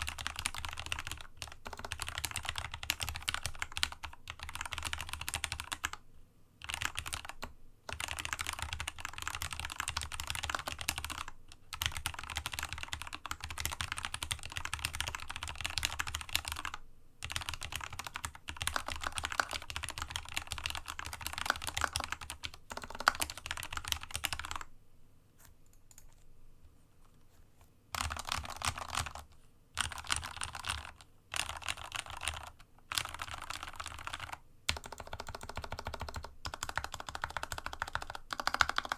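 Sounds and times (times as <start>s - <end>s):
typing on mechanical keyboard: 0.0s - 6.0s, 6.6s - 24.7s, 25.7s - 26.2s, 27.9s - 38.9s.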